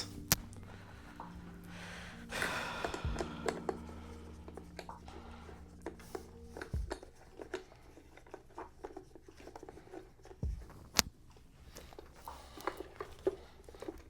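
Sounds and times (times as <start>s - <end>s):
small clicks and scrapes: 4.4s - 14.0s.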